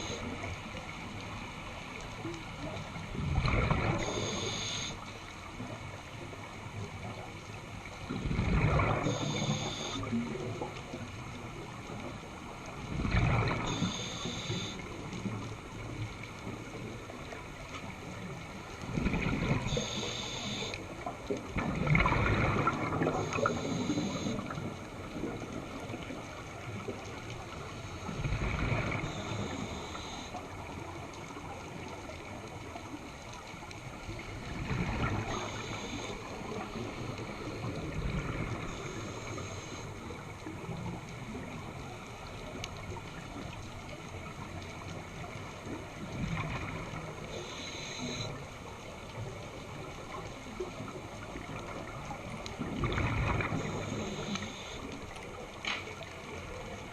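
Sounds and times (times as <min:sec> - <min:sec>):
exhaled bubbles rumbling underwater: 0:00.0 - 0:56.9
regulator hissing air: 0:04.0 - 0:05.0, 0:13.7 - 0:14.8, 0:19.7 - 0:20.8.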